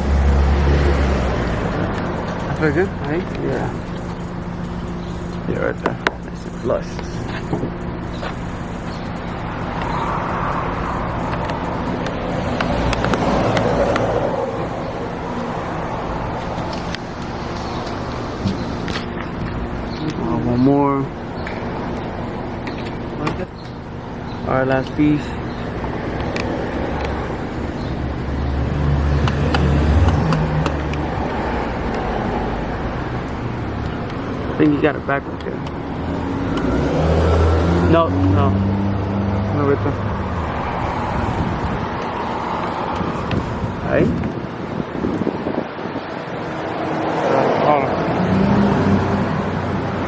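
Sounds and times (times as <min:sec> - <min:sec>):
vehicle driving past: 0:00.0 - 0:05.6, 0:06.6 - 0:20.5, 0:28.0 - 0:34.5, 0:35.8 - 0:43.2
steady low hum: 0:00.0 - 0:28.8
cars passing by: 0:00.0 - 0:50.0.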